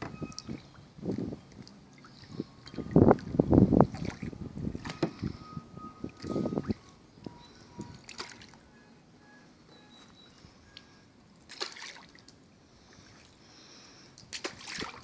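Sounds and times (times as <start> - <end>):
water trickling and dripping: 0.0 - 8.7, 10.3 - 13.5
light water splashes: 0.0 - 15.0.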